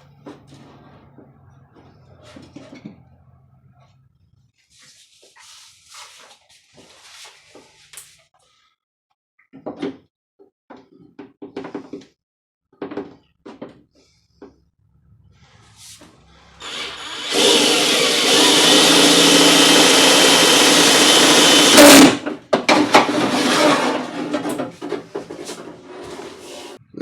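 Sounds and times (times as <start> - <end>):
power drill boring into door: 16.6 - 24.6.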